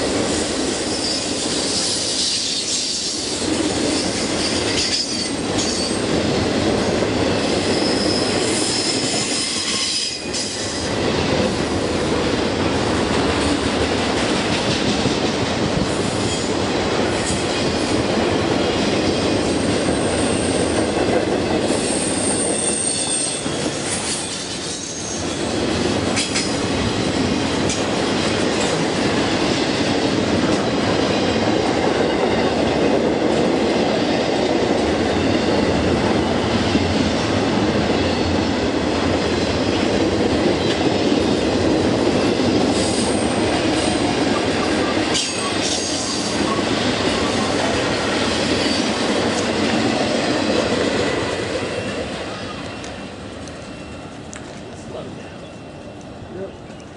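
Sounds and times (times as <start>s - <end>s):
train wheels rumbling on rails: 0.0s - 56.9s
high wheel squeals: 7.6s - 10.7s, 21.7s - 25.4s.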